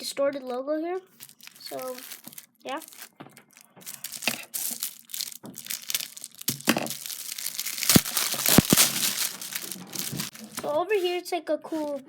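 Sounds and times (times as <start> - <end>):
plastic packaging crinkling: 1.1 - 10.8, 11.8 - 12.0.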